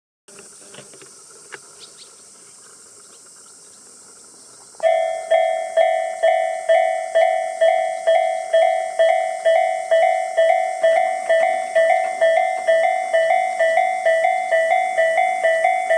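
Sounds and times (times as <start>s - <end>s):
faint background hiss: 0.3s - 15.9s
level crossing alarm ringing: 4.8s - 15.9s.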